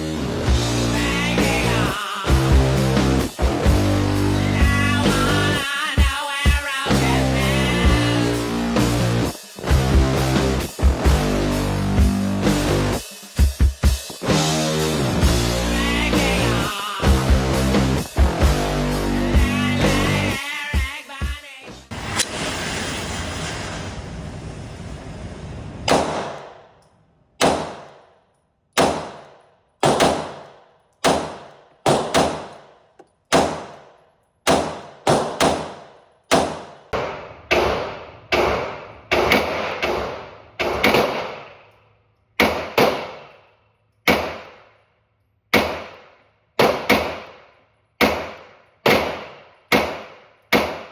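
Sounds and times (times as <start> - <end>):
pistol shots with ringing tail: 25.9 - 26.8, 27.4 - 28.2, 28.8 - 41.6, 42.4 - 43.4, 44.1 - 44.7, 45.5 - 50.9.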